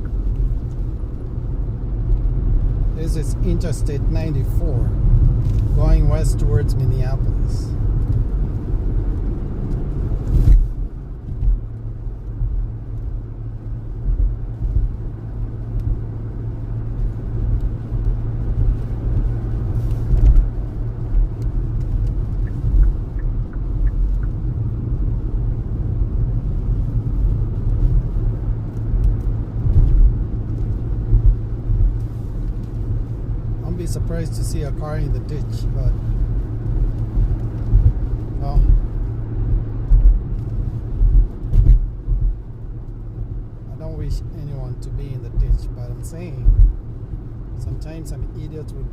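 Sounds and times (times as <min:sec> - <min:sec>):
car engine and tyre rumble: 0:00.0 - 0:48.9.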